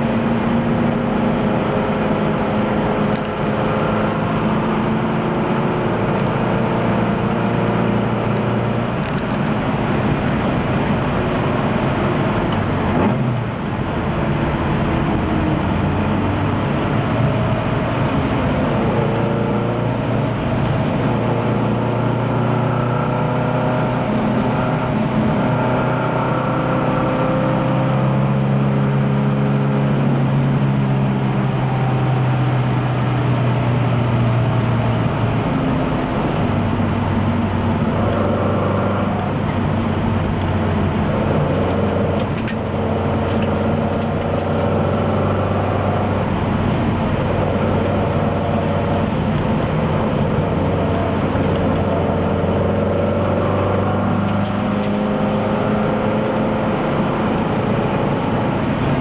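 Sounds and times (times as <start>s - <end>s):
race car engine under load: 0.0s - 59.0s.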